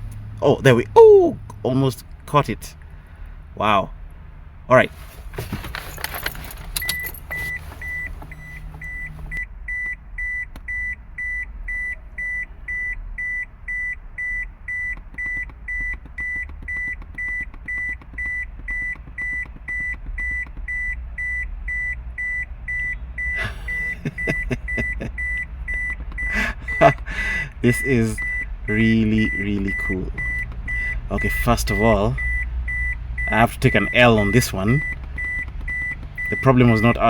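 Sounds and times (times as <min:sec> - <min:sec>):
clattering and rattling: 0:05.0 - 0:09.3
high electronic beep: 0:27.8 - 0:37.0.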